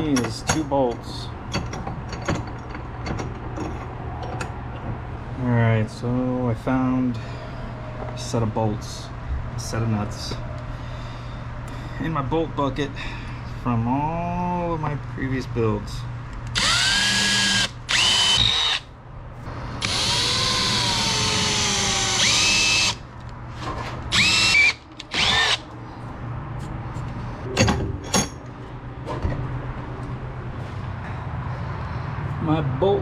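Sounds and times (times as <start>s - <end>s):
power drill motor whining: 16.5s - 18.8s, 19.8s - 23.0s, 24.1s - 25.6s.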